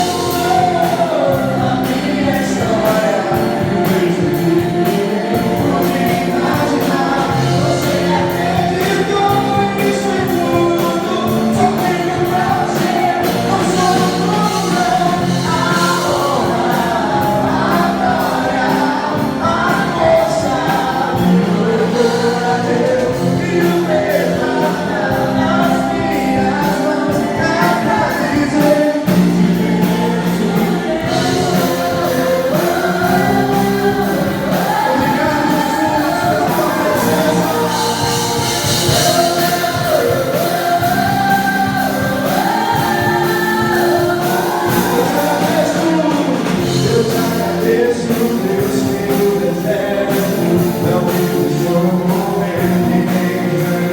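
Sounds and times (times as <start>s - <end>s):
band with steady beat: 0.0s - 53.9s
choir singing gospel song: 0.0s - 53.9s.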